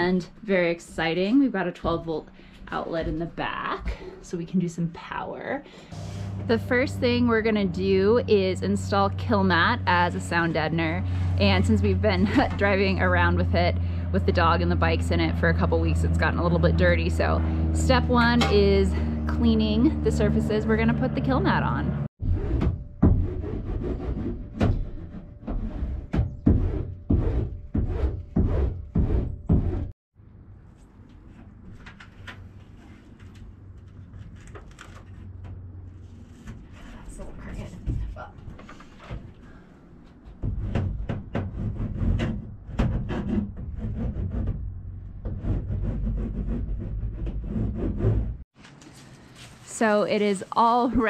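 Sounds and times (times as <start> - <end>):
low rumble: 0.0 - 30.8
scrubbing on sheet metal: 22.2 - 29.9, 40.4 - 48.4.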